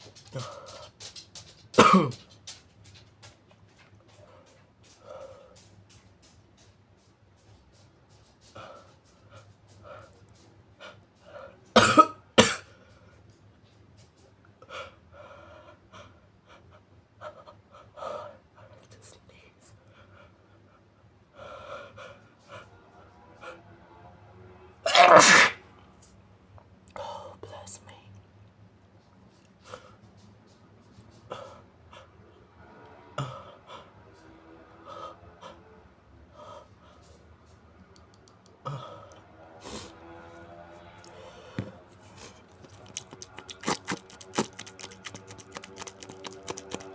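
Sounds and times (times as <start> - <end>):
breaths: 19.8 - 22.7, 34.8 - 37.2
person sniffing: 24.9 - 25.6, 39.6 - 40.0, 41.6 - 46.9.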